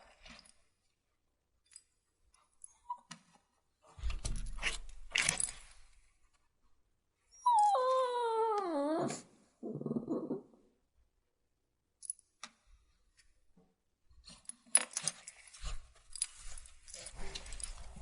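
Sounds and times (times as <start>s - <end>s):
puppy whining: 7.3s - 10.7s
puppy low grumble: 8.7s - 10.6s.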